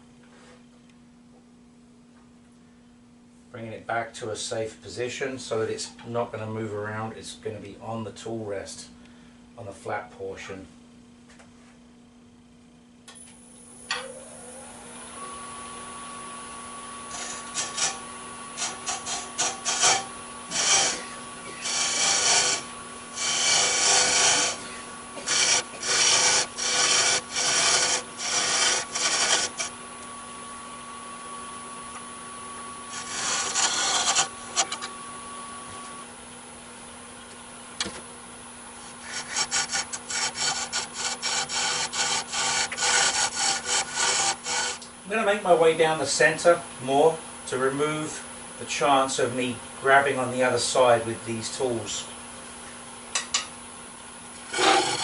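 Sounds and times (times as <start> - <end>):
wood lathe humming: 14.0 - 36.1, 38.7 - 45.0, 54.3 - 55.0
tool scraping spinning wood: 16.8 - 29.8, 32.0 - 36.0, 38.8 - 44.9, 54.4 - 55.0.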